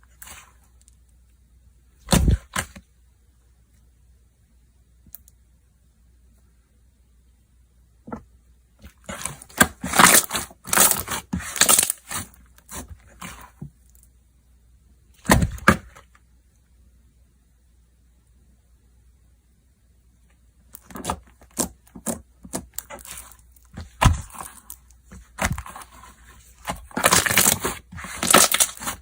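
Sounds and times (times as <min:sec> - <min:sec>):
slime crackling and popping: 0:09.1 - 0:12.8, 0:20.8 - 0:29.0.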